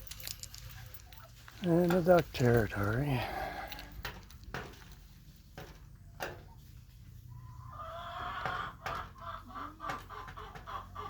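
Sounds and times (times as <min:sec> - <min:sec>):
chickens clucking: 0:03.5 - 0:11.0.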